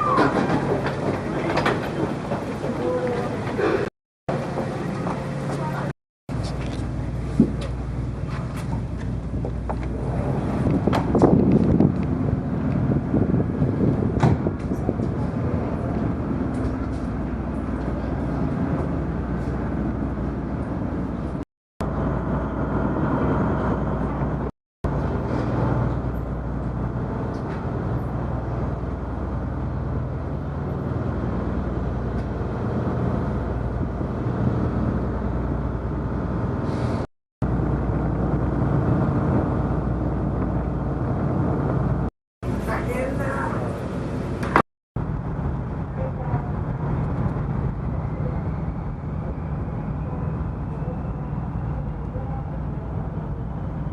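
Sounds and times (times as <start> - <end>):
ship engines droning: 0.0 - 53.9.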